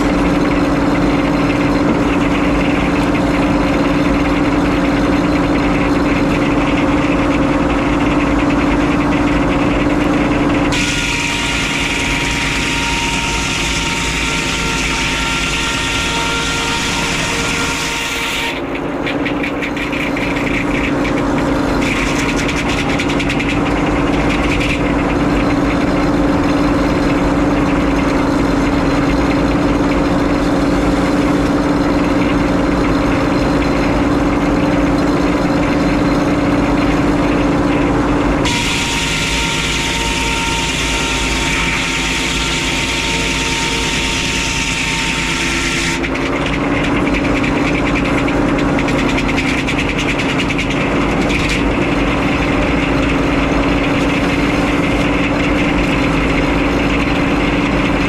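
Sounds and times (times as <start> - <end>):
saw blade cutting log: 0.0 - 36.7, 37.4 - 58.0
sawmill running: 0.0 - 58.0.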